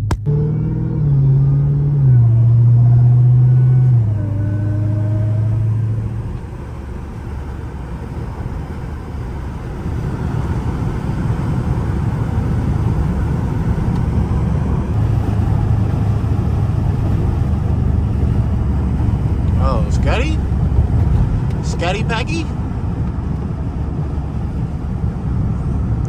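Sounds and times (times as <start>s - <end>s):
car engine low drone: 0.0s - 26.0s
road noise: 0.0s - 26.0s.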